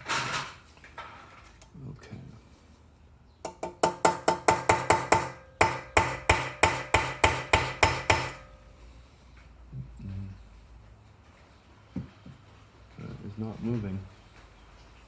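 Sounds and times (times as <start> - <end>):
hammer striking metal: 3.5 - 8.6.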